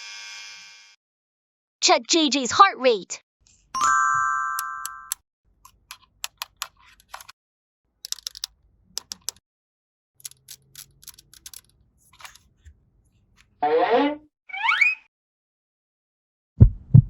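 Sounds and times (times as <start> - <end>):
plastic toy pieces clicking: 4.8 - 7.3, 8.0 - 9.4, 10.2 - 12.4.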